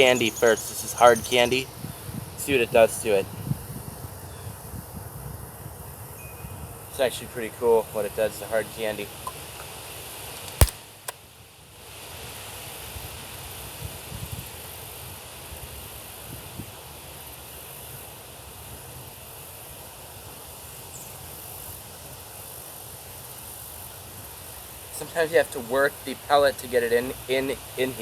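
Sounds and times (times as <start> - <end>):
sharp clicks: 10.6 - 11.2.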